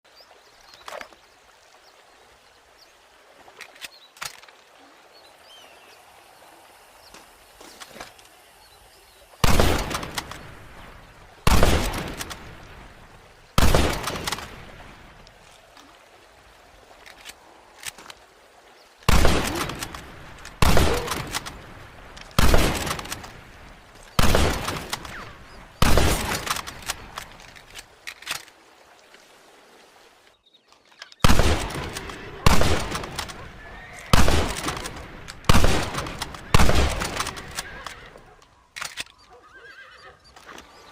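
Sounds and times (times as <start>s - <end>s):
rifle shots echoing: 9.4s - 10.4s, 11.4s - 12.5s, 13.6s - 14.6s, 19.1s - 21.6s, 22.4s - 23.3s, 24.2s - 27.0s, 31.2s - 37.8s.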